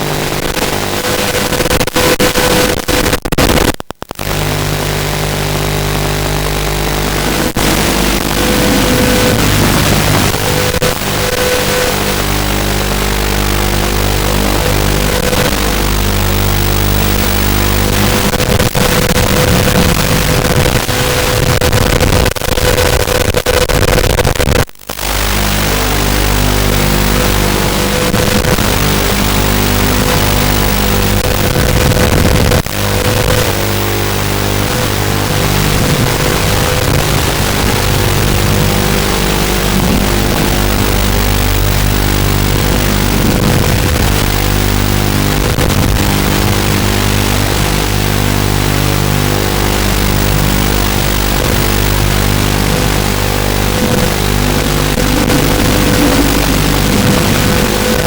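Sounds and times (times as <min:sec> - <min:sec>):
quadcopter propellers buzzing: 0:05.7 - 0:16.2, 0:35.4 - 0:44.2, 0:51.6 - 0:58.0.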